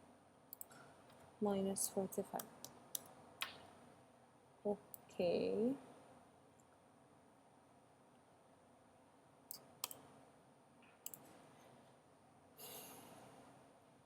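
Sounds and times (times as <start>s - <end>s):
faint computer clicks: 0.5s - 1.2s, 9.5s - 10.0s, 11.0s - 11.3s.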